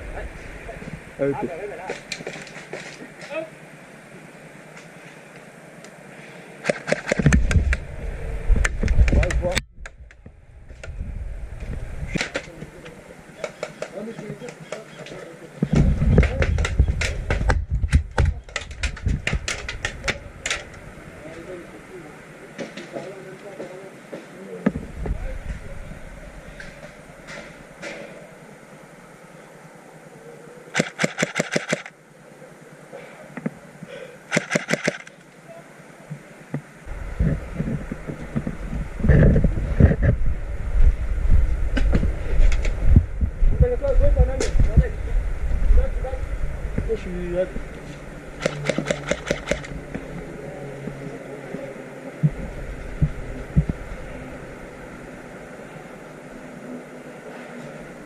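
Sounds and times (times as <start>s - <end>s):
steady low hum: 0.0s - 58.0s
airsoft gun shots: 30.7s - 31.9s, 34.3s - 35.2s, 48.4s - 49.7s
sharp click: 30.8s - 31.9s, 34.3s - 35.3s, 48.4s - 49.7s
dull low thumps: 42.8s - 45.9s.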